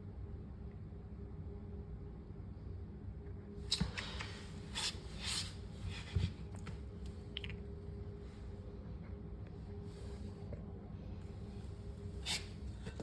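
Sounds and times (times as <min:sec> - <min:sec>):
steady low hum: 0:00.0 - 0:13.0
scraping and rubbing strokes: 0:03.7 - 0:06.4, 0:12.2 - 0:13.0.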